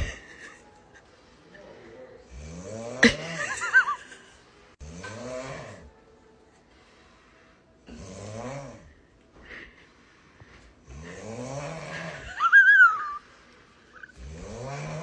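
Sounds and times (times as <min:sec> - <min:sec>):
person snoring: 0:02.2 - 0:03.6, 0:04.8 - 0:05.9, 0:07.9 - 0:08.9, 0:10.8 - 0:13.2, 0:14.0 - 0:15.0.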